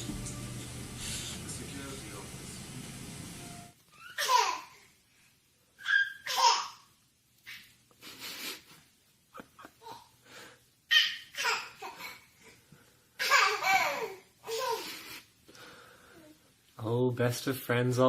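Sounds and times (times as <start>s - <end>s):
baby laughing and babbling: 3.9s - 4.9s, 5.8s - 6.9s, 9.8s - 10.2s, 10.9s - 12.4s, 13.2s - 15.1s.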